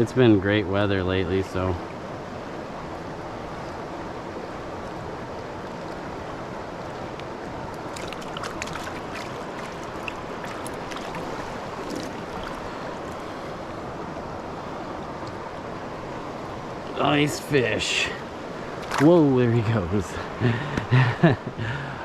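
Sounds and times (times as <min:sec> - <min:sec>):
stream water flowing: 0:00.0 - 0:21.6.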